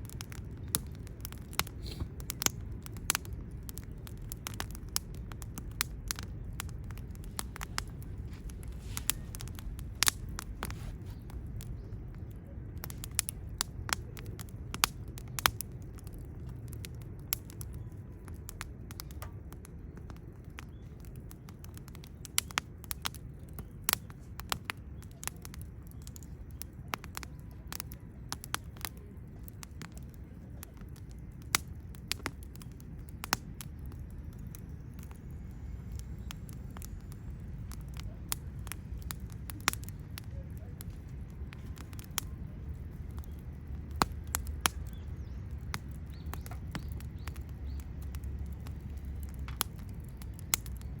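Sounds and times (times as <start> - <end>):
low rumble: 0.0 - 20.3
campfire crackling and popping: 0.0 - 51.0.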